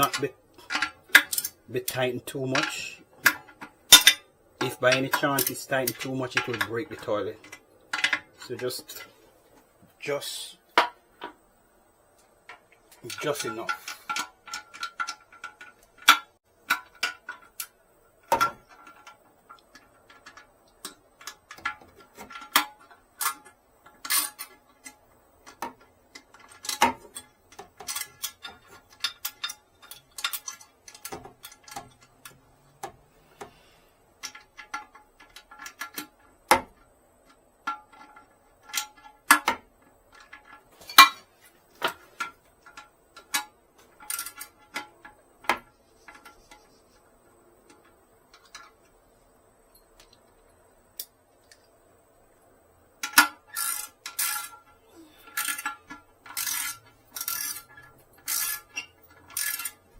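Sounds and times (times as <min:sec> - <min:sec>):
wrench clicking on metal bolts: 0:00.0 - 0:09.2, 0:12.4 - 0:33.6, 0:34.2 - 0:46.7, 0:52.9 - 0:59.9.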